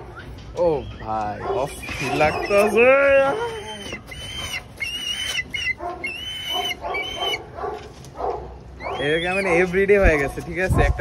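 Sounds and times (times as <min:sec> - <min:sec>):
dog whining: 0:00.0 - 0:07.8, 0:08.8 - 0:09.8.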